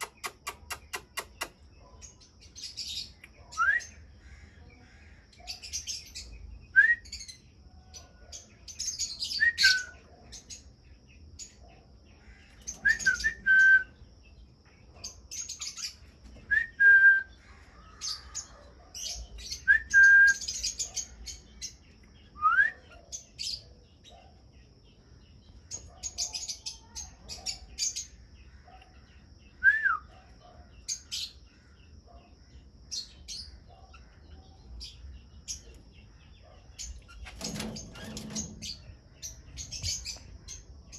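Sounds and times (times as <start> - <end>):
parrots chirping chatter: 0.0 - 1.7.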